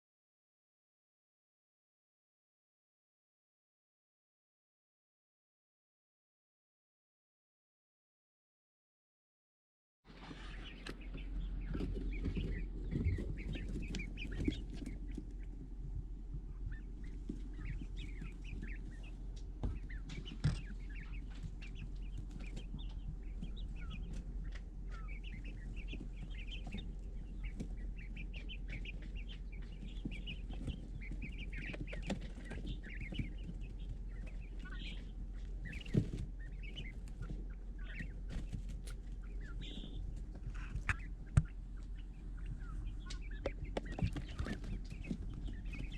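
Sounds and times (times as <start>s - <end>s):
chicks peeping: 10.1s - 45.9s
steady low hum: 10.1s - 45.9s.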